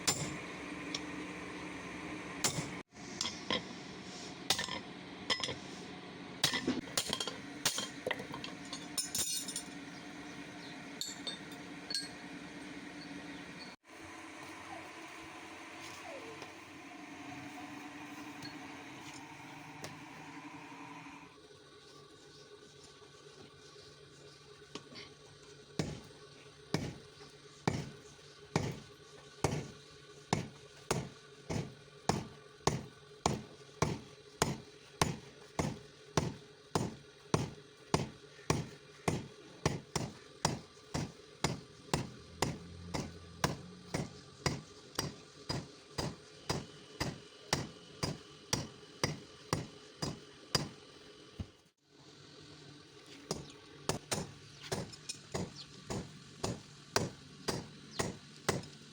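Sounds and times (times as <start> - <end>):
hammer blows ringing on anvil: 0.0 - 0.4, 30.4 - 50.8.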